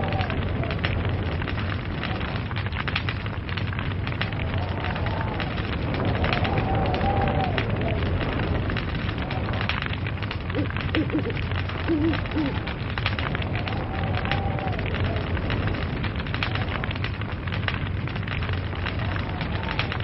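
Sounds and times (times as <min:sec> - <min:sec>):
log fire crackling: 0:00.0 - 0:20.0
low rumble of flames: 0:00.0 - 0:20.0.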